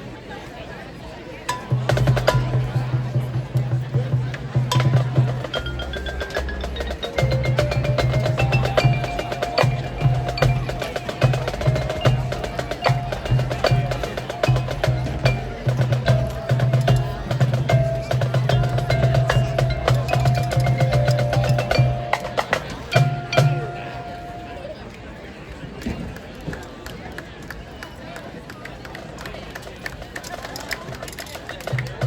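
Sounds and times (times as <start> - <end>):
marching band playing: 1.5 - 24.8.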